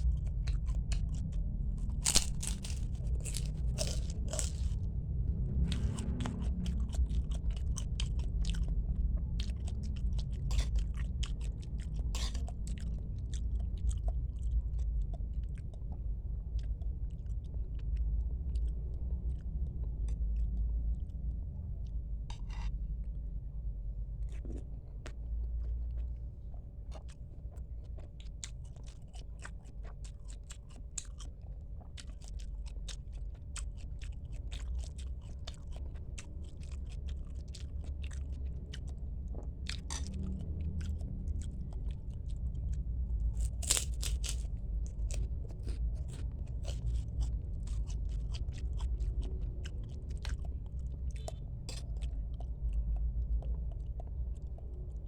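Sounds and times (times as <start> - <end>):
steady low hum: 0.0 - 55.0
wet chewing mouth clicks: 0.1 - 4.8, 24.3 - 54.9.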